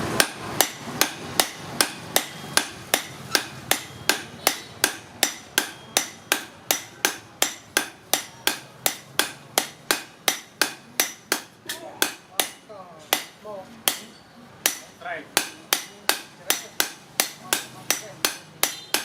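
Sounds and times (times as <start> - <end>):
hammer striking metal: 0.0 - 19.0.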